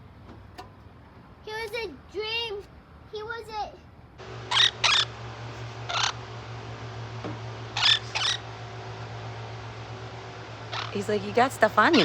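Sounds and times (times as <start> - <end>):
steady low hum: 4.1 - 12.0.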